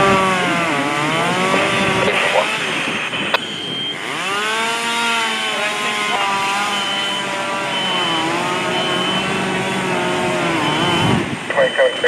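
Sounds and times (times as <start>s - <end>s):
small gasoline engine revving: 0.0s - 3.1s, 3.9s - 11.5s
short high beeps: 2.1s - 4.1s, 6.7s - 9.8s, 10.5s - 12.0s.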